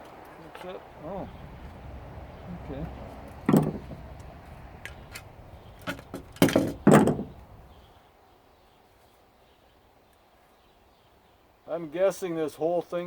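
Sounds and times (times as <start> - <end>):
plastic parts knocking: 3.4 - 4.3, 5.8 - 7.4.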